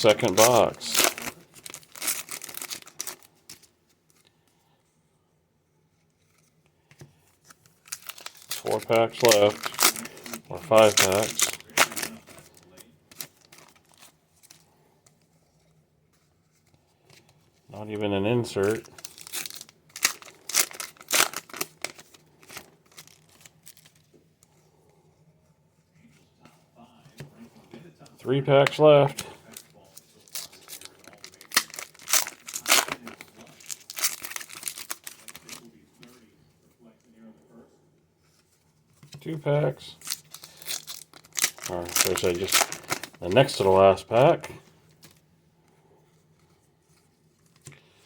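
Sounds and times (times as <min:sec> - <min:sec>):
wrapper crinkling and tearing: 0:00.0 - 0:03.7, 0:07.6 - 0:14.6, 0:18.4 - 0:24.1, 0:28.3 - 0:35.8, 0:39.1 - 0:45.2.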